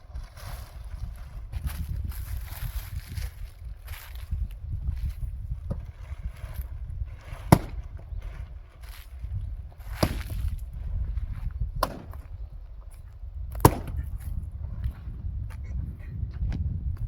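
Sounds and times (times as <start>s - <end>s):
axe chopping firewood: 7.4s - 8.0s, 9.8s - 10.6s, 11.8s - 12.4s, 13.5s - 14.3s.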